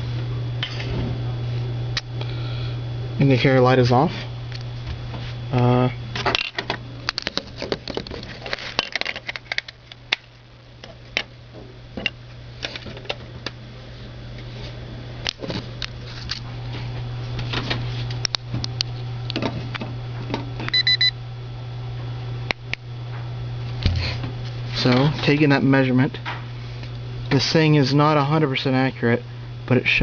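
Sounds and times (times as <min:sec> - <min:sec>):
steady low hum: 0:00.0 - 0:30.0
electronic double beep: 0:20.7 - 0:21.1.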